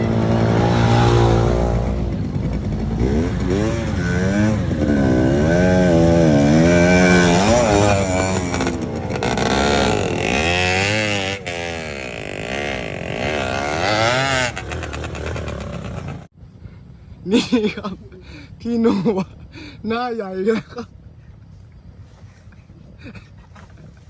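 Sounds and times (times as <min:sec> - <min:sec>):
dirt bike engine revving: 0:00.0 - 0:16.3.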